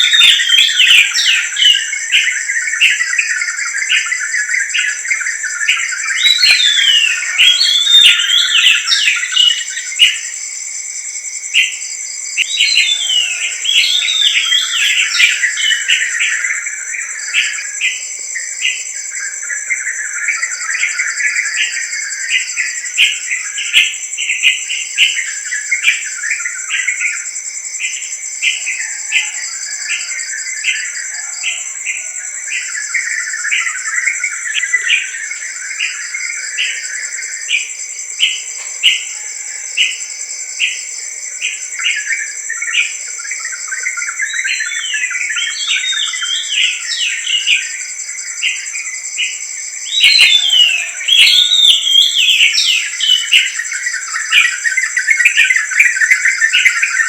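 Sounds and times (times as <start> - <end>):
bird warbling song: 0.0 - 10.0, 12.4 - 18.8, 43.5 - 47.8, 49.9 - 57.0
crickets trilling: 0.0 - 57.0.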